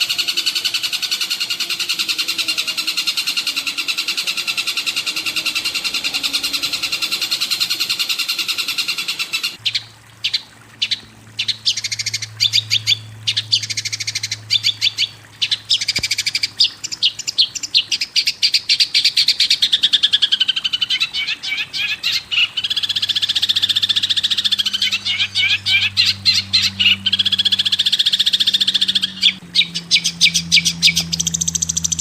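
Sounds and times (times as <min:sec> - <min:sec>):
songbird trilling: 0:00.0 - 0:32.0
steady low hum: 0:23.0 - 0:32.0.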